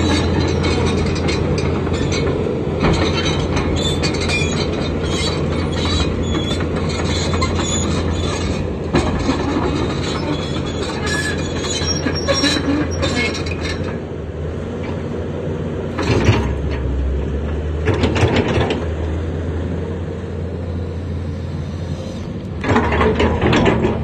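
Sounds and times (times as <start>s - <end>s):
metallic squeaks and clanks: 0.0s - 14.0s
excavator engine drone: 0.0s - 24.0s.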